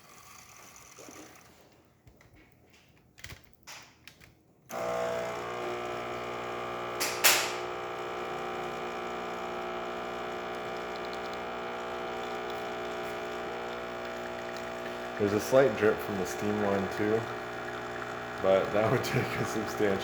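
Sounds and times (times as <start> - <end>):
espresso machine pump humming: 4.7 - 20.0.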